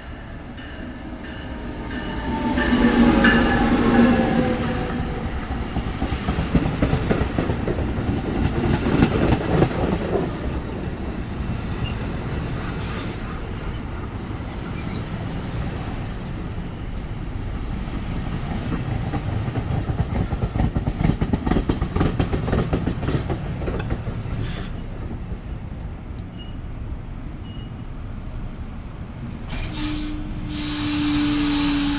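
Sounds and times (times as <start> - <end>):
passenger train rumbling: 0.0 - 31.9
wheels clicking over rail joints: 18.7 - 27.5.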